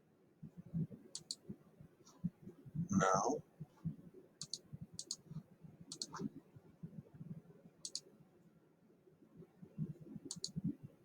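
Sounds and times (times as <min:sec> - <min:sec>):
mouse button clicks: 0:05.9 - 0:06.2, 0:10.3 - 0:10.6.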